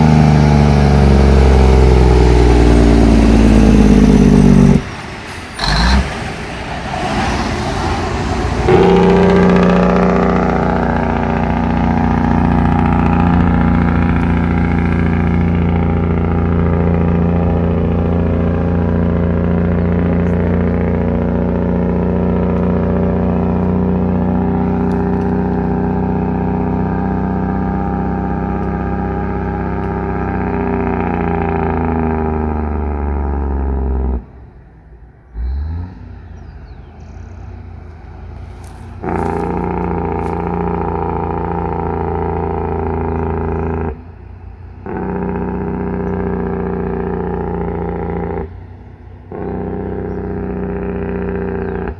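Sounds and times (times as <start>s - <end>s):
truck engine brake droning: 38.4s - 44.2s.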